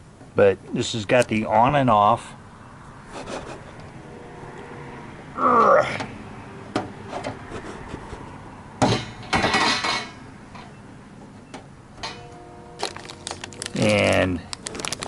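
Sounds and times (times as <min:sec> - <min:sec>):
metal squeak: 0:09.6 - 0:13.8
metal parts clattering and knocking: 0:12.8 - 0:15.0.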